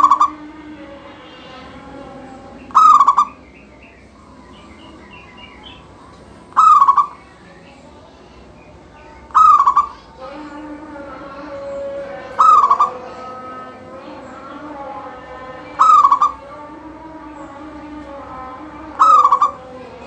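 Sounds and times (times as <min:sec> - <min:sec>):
dove cooing: 0:00.0 - 0:00.5, 0:02.4 - 0:03.4, 0:06.5 - 0:07.2, 0:09.3 - 0:10.1, 0:12.2 - 0:13.2, 0:15.7 - 0:16.8, 0:18.8 - 0:19.8.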